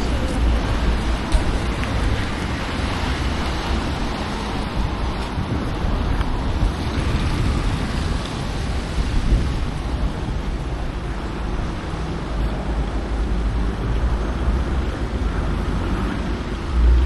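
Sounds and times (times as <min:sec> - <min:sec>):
passing traffic: 0:00.0 - 0:17.0
wind buffeting microphone: 0:00.0 - 0:17.0.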